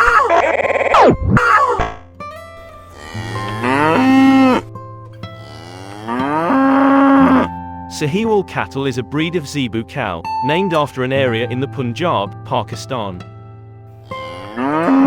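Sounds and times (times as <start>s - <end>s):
cow mooing: 0.0s - 2.0s, 2.8s - 7.6s, 14.1s - 15.0s.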